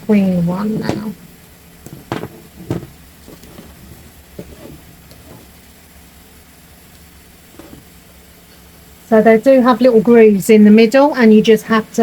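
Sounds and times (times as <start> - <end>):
plastic frame pieces knocking: 1.8 - 5.5.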